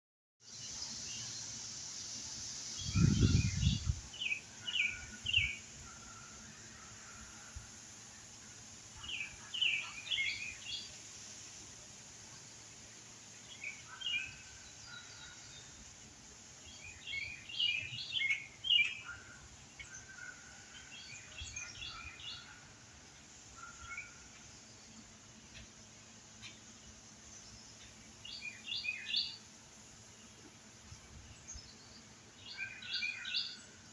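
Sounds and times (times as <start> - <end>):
background hiss: 0.4 - 33.9
songbirds chirping: 0.4 - 33.9.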